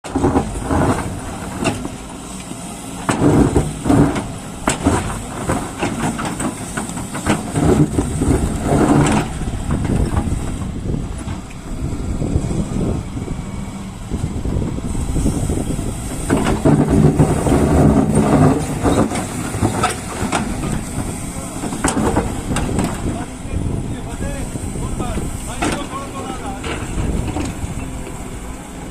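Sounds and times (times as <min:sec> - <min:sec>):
excavator diesel engine labouring: 0:00.0 - 0:28.9
knocks and clanks: 0:00.1 - 0:02.0, 0:03.0 - 0:11.6, 0:16.1 - 0:23.3, 0:25.5 - 0:28.2.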